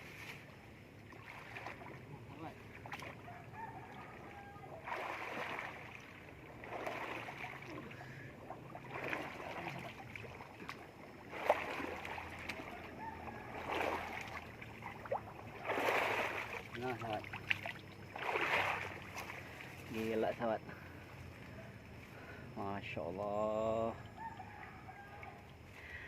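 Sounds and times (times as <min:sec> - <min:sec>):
water splashing and sloshing: 0:00.0 - 0:22.9, 0:23.7 - 0:26.0.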